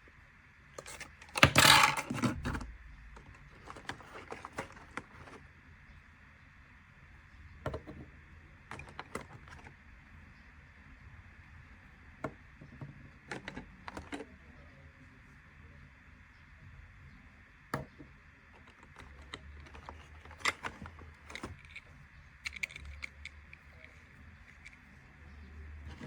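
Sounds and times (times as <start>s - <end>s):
faint low hum: 0.0s - 26.0s
plastic toy pieces clicking: 18.6s - 24.8s.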